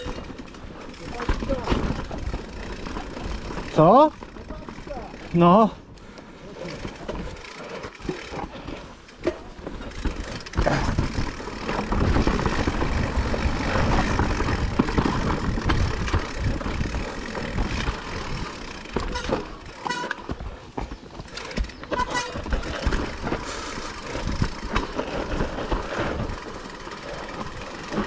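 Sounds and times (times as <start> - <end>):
wind buffeting microphone: 10.6 - 18.6.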